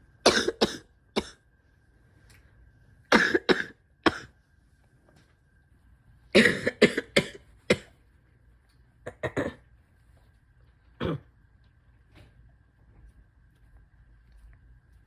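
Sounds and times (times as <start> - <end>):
person coughing: 0.2 - 1.4, 3.1 - 4.3, 6.4 - 7.9, 9.1 - 9.6, 11.0 - 11.3.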